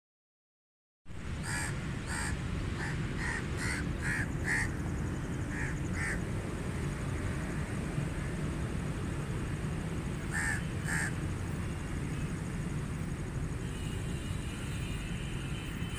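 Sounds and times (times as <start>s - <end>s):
crows cawing: 1.4s - 4.8s, 5.5s - 6.2s, 10.3s - 11.2s.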